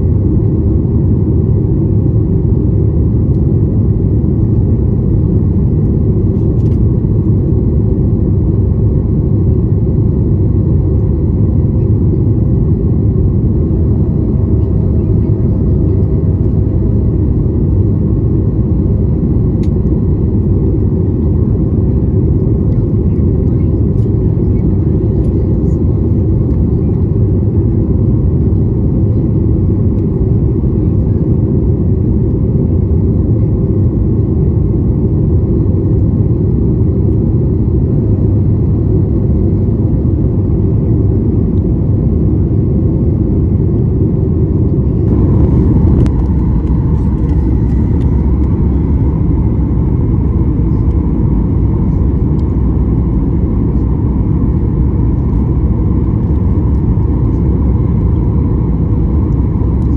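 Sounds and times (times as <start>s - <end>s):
airplane cabin engine rumble: 0.0s - 59.9s
faint higher hum: 43.8s - 59.9s.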